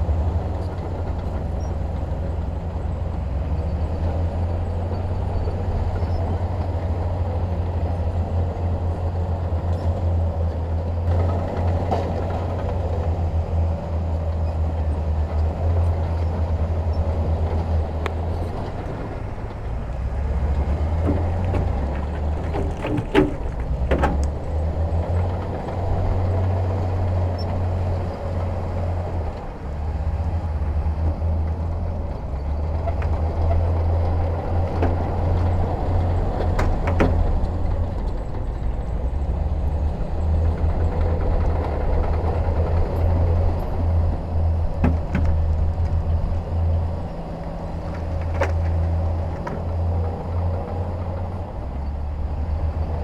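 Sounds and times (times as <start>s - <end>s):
sharp metal knocks: 20.6s - 24.5s, 44.8s - 45.6s.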